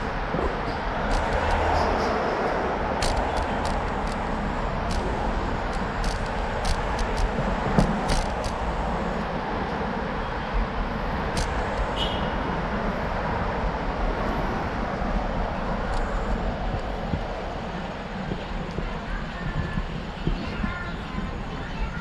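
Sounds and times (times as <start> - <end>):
microphone rumble: 0.0 - 22.0
passing traffic: 0.0 - 22.0
sharp clicks: 1.1 - 2.0, 3.0 - 9.0, 11.3 - 12.0.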